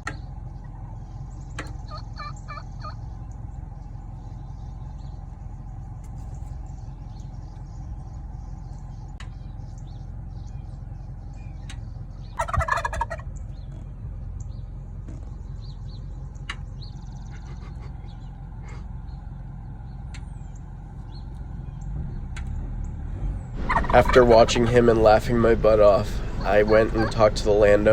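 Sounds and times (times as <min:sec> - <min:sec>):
turkey gobbling: 0:00.0 - 0:05.1, 0:08.6 - 0:18.8, 0:23.6 - 0:27.9.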